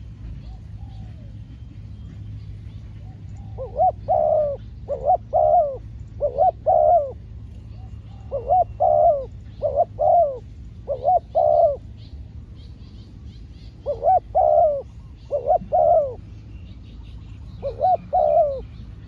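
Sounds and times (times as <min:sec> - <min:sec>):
steady low rumble: 0:00.0 - 0:19.0
dove cooing: 0:03.0 - 0:11.9, 0:13.8 - 0:16.3, 0:17.6 - 0:19.0.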